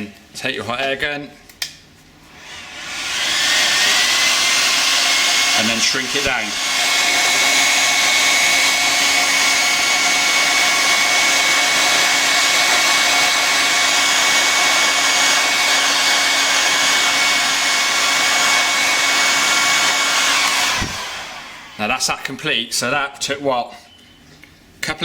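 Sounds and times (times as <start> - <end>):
hot air gun blowing: 2.3 - 22.1.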